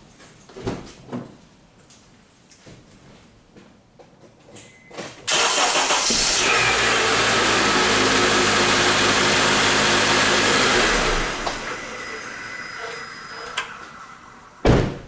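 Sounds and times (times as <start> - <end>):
starter cranking engine: 5.3 - 13.8
car engine running: 5.4 - 14.6.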